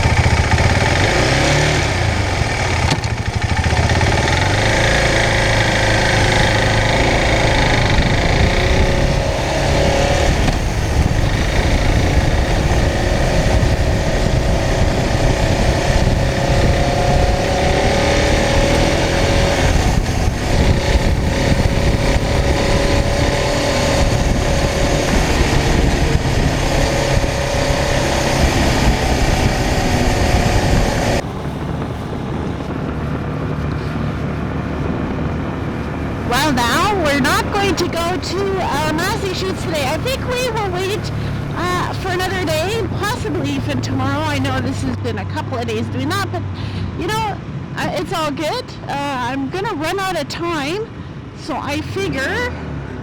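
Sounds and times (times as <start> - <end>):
motorcycle engine running: 0.0 - 53.0
wind on microphone: 0.0 - 53.0.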